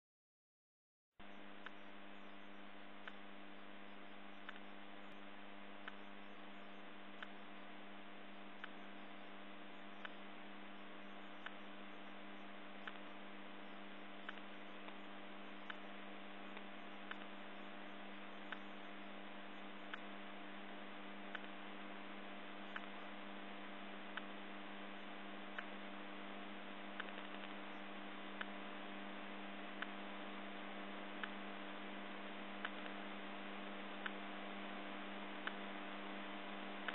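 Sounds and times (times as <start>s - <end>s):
short clicks: 32.6s - 33.0s.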